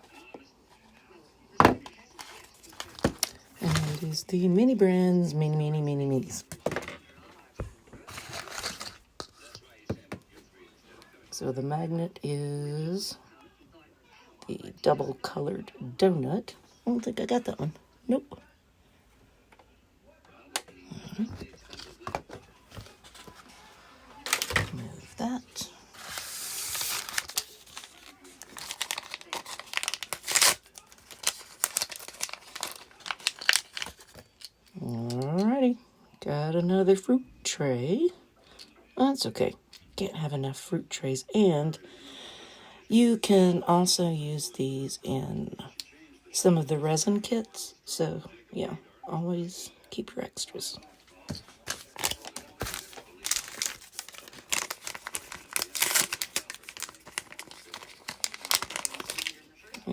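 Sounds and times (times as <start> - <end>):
plastic wrapper crinkling and tearing: 2.2 - 4.2, 8.1 - 9.0, 24.2 - 34.6, 51.4 - 59.9
packaging being torn and crumpled: 8.1 - 9.0, 26.0 - 34.5, 51.6 - 59.9.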